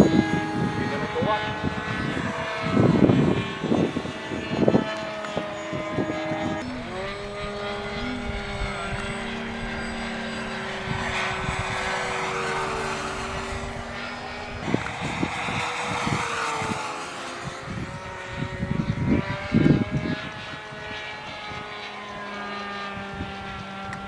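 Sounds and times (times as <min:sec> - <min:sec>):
model airplane motor whining: 0:00.0 - 0:24.0
wind thumps on microphone: 0:05.8 - 0:16.9.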